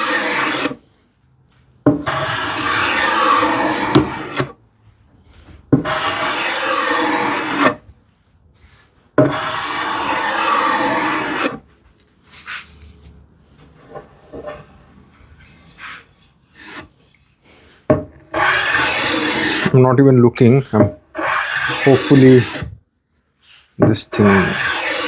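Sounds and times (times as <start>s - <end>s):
hand plane strokes on wood: 0.0s - 4.6s, 5.3s - 17.2s, 18.0s - 19.9s, 20.5s - 22.8s, 23.5s - 25.0s
scraping and handling sounds: 23.4s - 25.0s.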